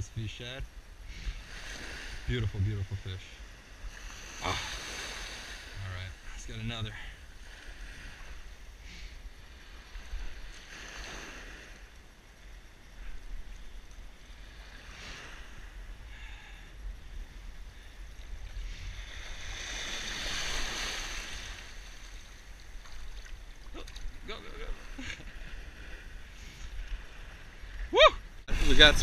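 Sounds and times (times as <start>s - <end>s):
wind rumble on microphone: 7.2s - 29.0s.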